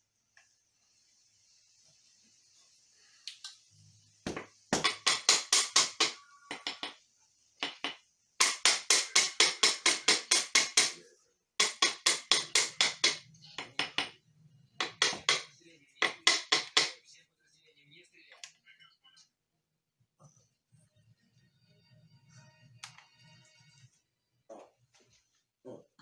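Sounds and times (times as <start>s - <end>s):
rapid sharp knocking: 4.3s - 7.0s, 7.7s - 11.0s.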